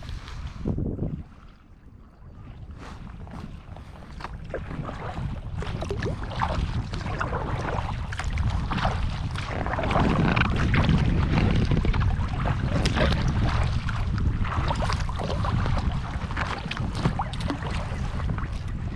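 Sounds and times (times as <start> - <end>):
paddle splashing in water: 0.0 - 18.9
wind rumble on microphone: 0.0 - 18.9.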